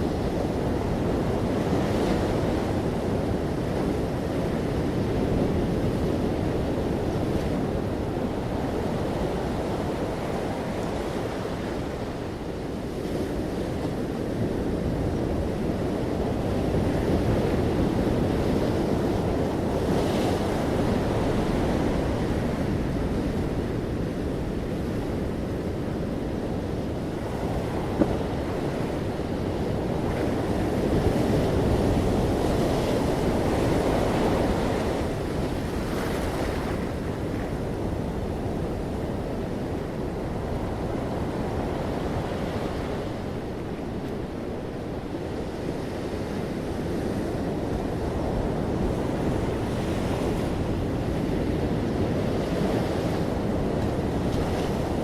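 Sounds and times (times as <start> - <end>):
ocean waves breaking on shore: 0.0 - 55.0.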